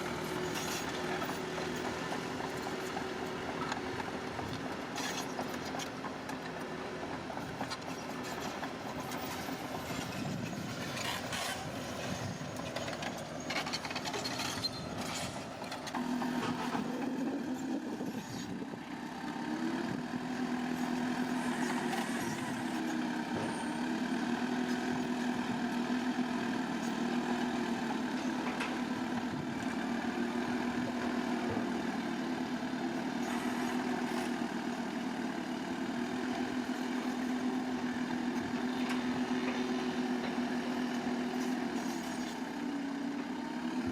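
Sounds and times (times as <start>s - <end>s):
bulldozer diesel engine: 0.0s - 43.9s.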